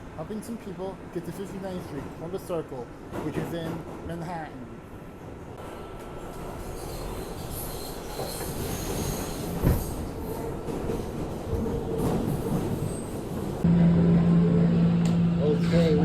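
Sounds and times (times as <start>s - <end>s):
subway wheels rumbling on rail: 0.0s - 16.0s.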